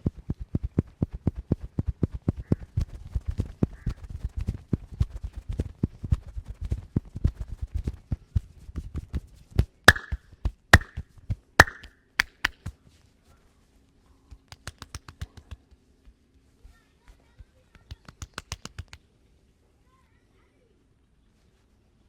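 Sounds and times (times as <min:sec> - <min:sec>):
hand chops and slaps on body: 0:09.6 - 0:12.7.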